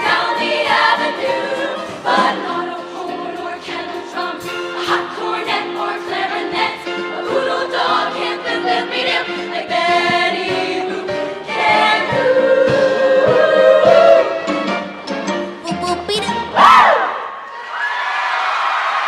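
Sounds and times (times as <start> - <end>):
choir singing in harmony: 0.0 - 15.0.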